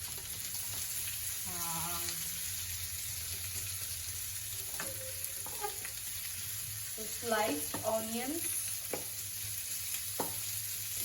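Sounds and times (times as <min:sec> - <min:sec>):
onions sizzling in hot oil: 0:00.0 - 0:11.0
spatula clinking: 0:04.6 - 0:06.0.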